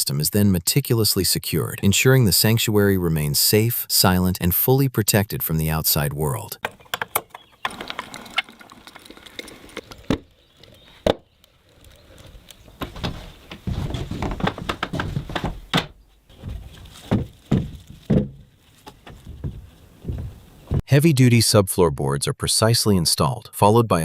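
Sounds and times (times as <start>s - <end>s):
dull wooden thuds: 12.2s - 20.9s
sharp wooden knocks: 12.8s - 20.8s.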